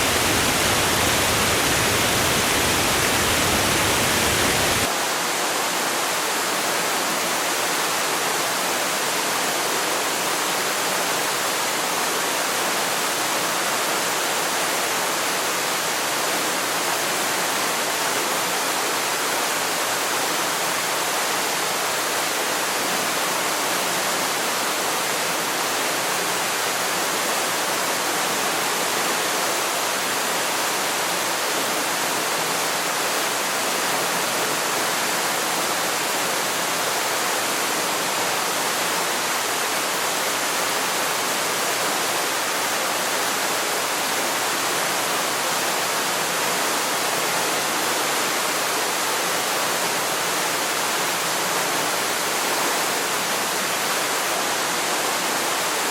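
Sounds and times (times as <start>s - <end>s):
waterfall roaring: 0.0s - 4.9s.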